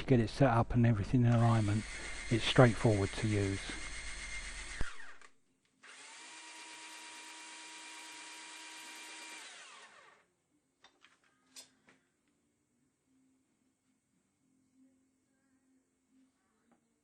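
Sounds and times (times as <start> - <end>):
thread-rolling machine running: 1.4 - 5.3.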